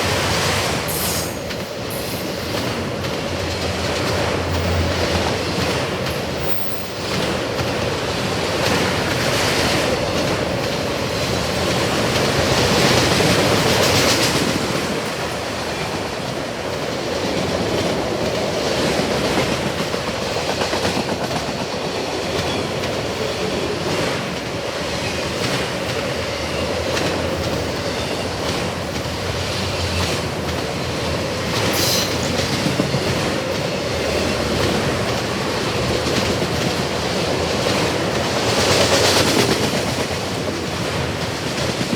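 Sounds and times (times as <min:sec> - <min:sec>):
freight train rumbling past: 0:00.0 - 0:41.9.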